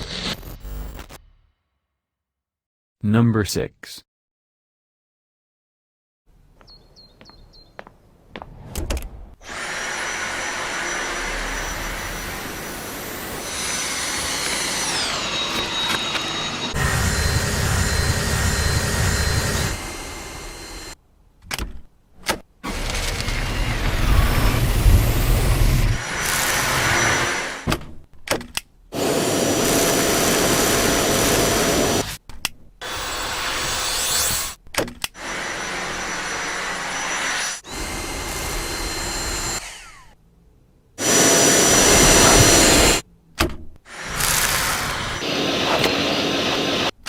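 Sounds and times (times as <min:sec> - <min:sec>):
vacuum cleaner motor whining: 0:09.5 - 0:21.0, 0:22.7 - 0:27.7, 0:29.0 - 0:32.1, 0:35.2 - 0:40.1, 0:41.0 - 0:43.0, 0:44.0 - 0:46.9.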